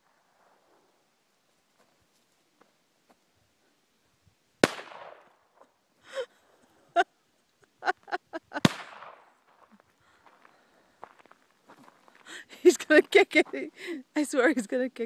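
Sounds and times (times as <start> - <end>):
pistol shots with echo: 4.6 - 5.2.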